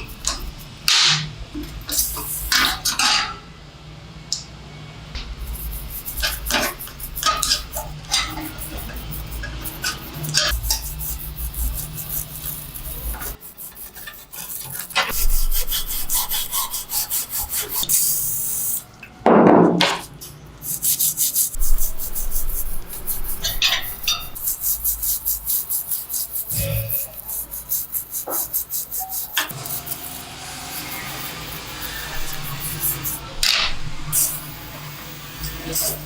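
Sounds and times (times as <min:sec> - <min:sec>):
rhythmic hand rubbing: 0:00.0 - 0:01.0, 0:01.8 - 0:02.9, 0:05.2 - 0:18.9, 0:20.6 - 0:36.0
loud knock: 0:19.3 - 0:20.0.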